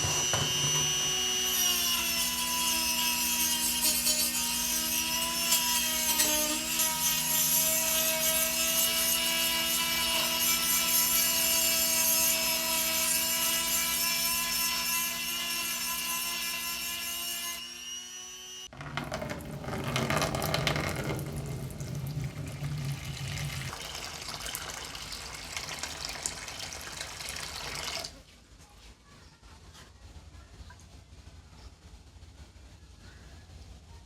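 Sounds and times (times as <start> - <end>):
power tool motor whining: 0.0 - 1.7.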